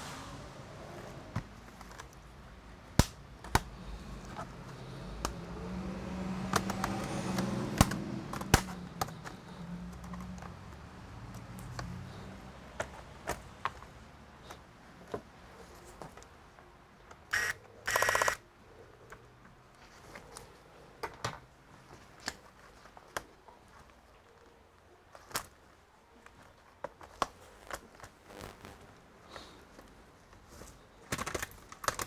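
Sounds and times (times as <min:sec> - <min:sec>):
light clicks and taps on laptop case: 0:03.0 - 0:05.7, 0:06.4 - 0:15.3
rasping rapid clicks: 0:06.5 - 0:10.6, 0:17.3 - 0:18.4.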